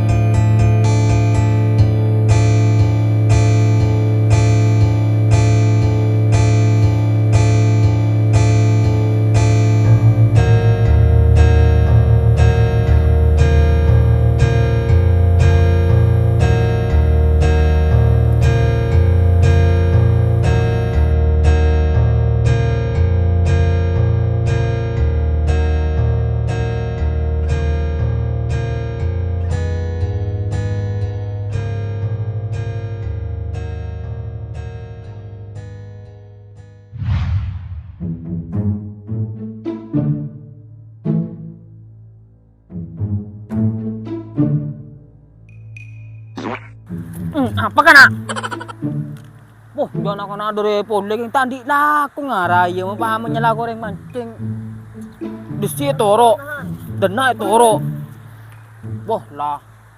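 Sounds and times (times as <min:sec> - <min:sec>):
bass line: 0:00.0 - 0:29.6, 0:45.4 - 0:48.8
guitar strumming: 0:00.0 - 0:36.9, 0:46.4 - 0:51.2, 0:52.6 - 0:59.6.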